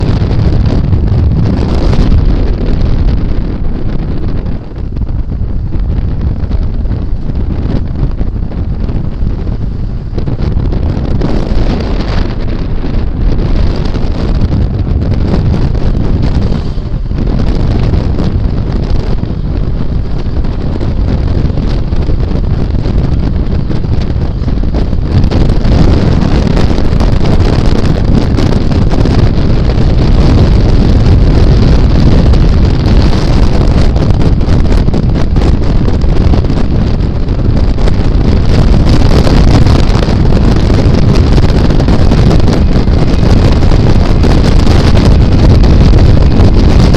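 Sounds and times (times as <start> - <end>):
wind buffeting microphone: 0.0 - 46.9.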